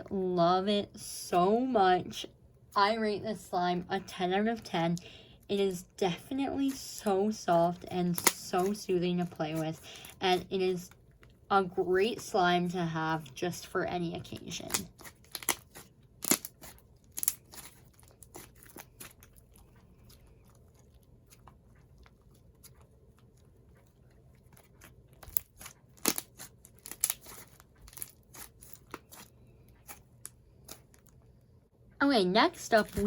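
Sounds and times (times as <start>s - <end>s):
slime squished by hand: 14.7s - 19.4s.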